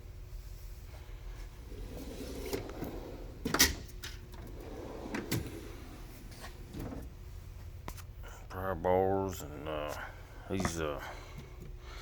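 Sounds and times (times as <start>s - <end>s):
drawers sliding on runners: 1.6s - 7.2s
drawer shutting with metal clack: 2.0s - 7.1s.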